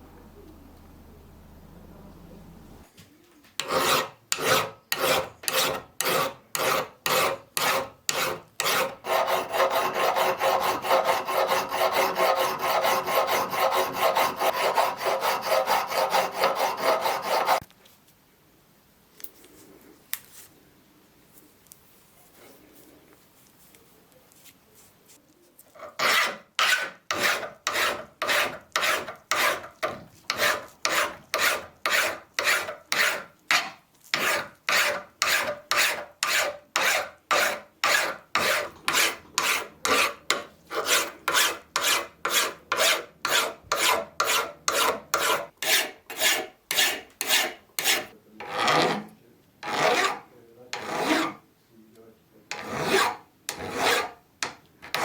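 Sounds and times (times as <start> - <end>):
file rasping back and forth: 3.6 - 17.6, 25.8 - 51.4, 52.5 - 55.0.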